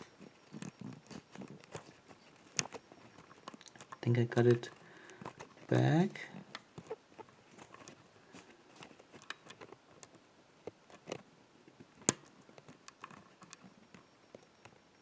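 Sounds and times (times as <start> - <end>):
lock pick scraping: 0.0 - 10.2.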